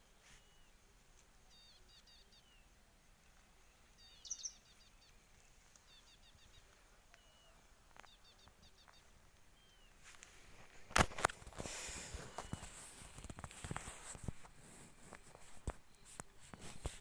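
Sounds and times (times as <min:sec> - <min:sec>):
songbird chirping: 0:00.0 - 0:10.8.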